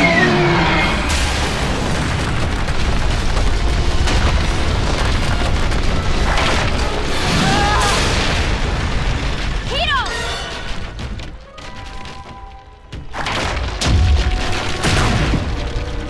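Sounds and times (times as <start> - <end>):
rumbling explosion blast: 0.0 - 11.3.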